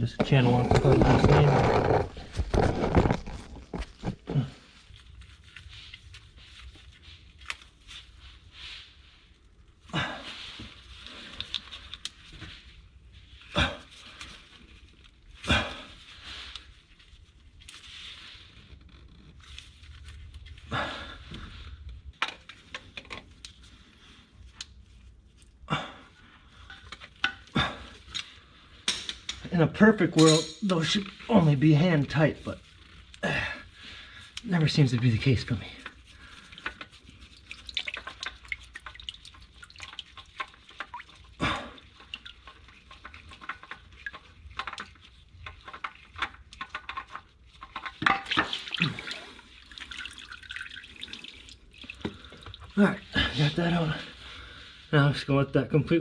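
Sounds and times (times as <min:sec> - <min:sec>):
oil filter wrench clinking: 0:30.2 - 0:30.8
oil dripping into a pan: 0:36.2 - 0:52.7.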